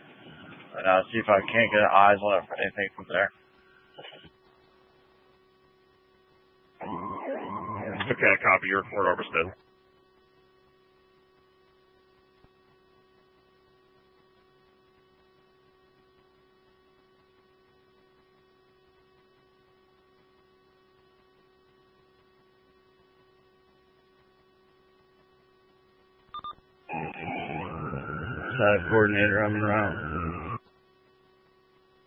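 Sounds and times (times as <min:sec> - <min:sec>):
scanner radio transmissions: 0:00.0 - 0:05.9, 0:06.8 - 0:09.8, 0:26.4 - 0:30.8
faint electrical hum: 0:00.0 - 0:32.0.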